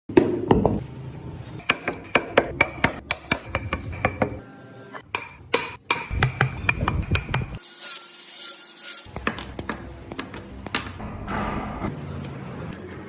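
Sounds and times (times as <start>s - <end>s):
mallet striking carving chisel: 1.6s - 4.4s.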